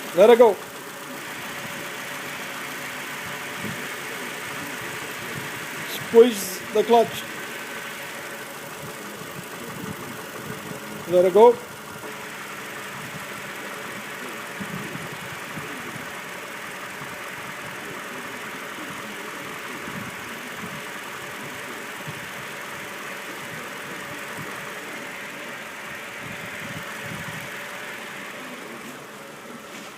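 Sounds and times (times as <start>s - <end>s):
car engine idling: 0.0s - 29.9s.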